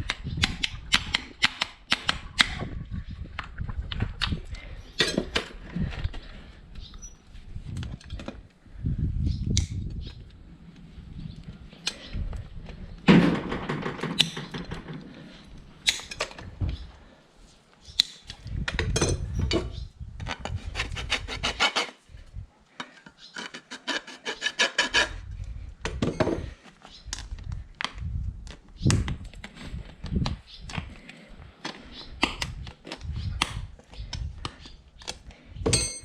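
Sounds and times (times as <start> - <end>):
rasp filing a hoof: 20.3 - 22.0, 23.2 - 25.3.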